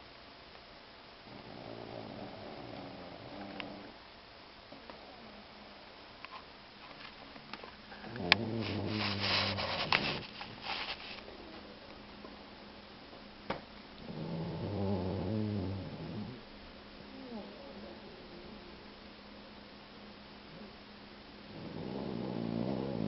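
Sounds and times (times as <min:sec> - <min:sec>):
dog snoring loudly: 0:01.2 - 0:04.0, 0:07.9 - 0:10.2, 0:14.0 - 0:16.4, 0:21.5 - 0:23.0.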